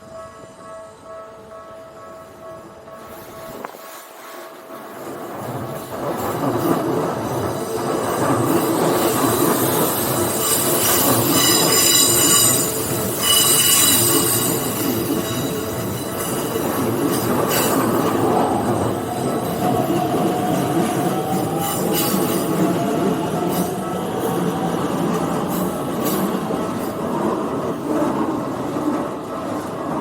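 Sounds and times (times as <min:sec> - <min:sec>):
train wheels on rails: 0:00.0 - 0:30.0
high squealing tones: 0:09.7 - 0:16.4.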